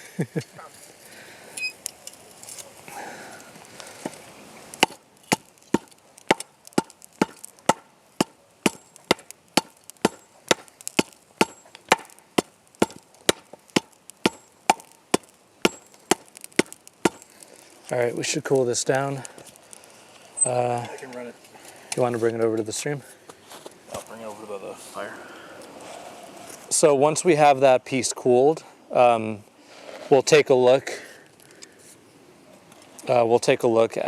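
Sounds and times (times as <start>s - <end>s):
hammer blows on hot steel: 4.8s - 17.4s.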